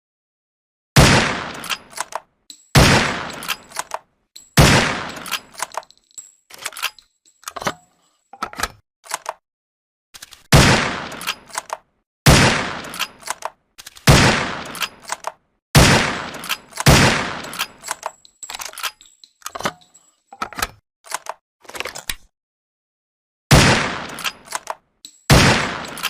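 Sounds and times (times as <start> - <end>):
rifle gunshots with echo: 1.0 - 1.9, 2.8 - 3.8, 4.6 - 5.5, 10.6 - 11.5, 12.3 - 13.2, 14.1 - 14.8, 15.8 - 17.6, 23.5 - 24.3, 25.3 - 26.0
metallic clicks and clanks: 1.5 - 9.4, 11.1 - 11.9, 12.8 - 15.4, 16.2 - 22.2, 24.0 - 26.0
small mechanical clicks: 9.0 - 9.4, 11.2 - 11.8, 12.8 - 14.1, 17.5 - 22.3, 24.2 - 24.8.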